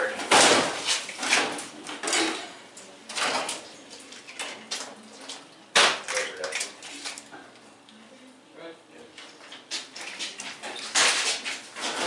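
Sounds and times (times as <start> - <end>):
sheet metal clanking and scraping: 10.6 - 12.0.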